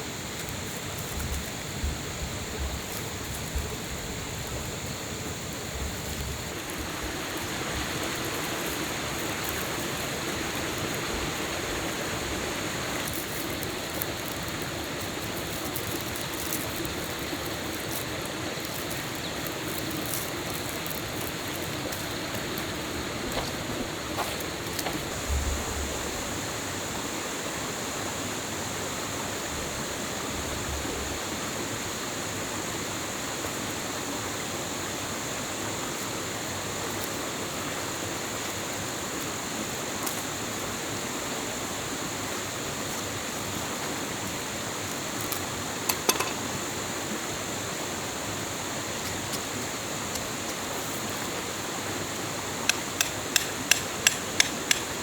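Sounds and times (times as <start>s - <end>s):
stream rushing: 0.0s - 55.0s.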